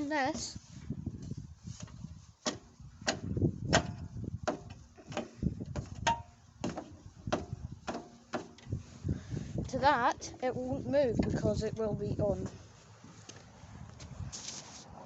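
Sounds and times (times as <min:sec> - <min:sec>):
low rumbling handling noise: 0:00.0 - 0:15.0.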